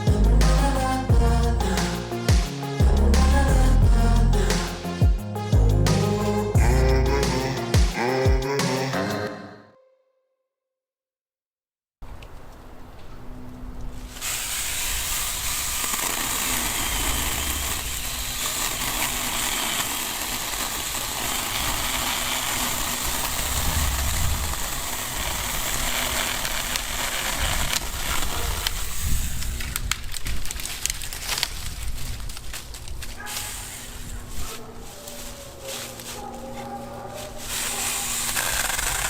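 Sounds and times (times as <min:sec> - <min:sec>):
electric chainsaw cutting log: 0:14.1 - 0:30.7, 0:37.4 - 0:39.0.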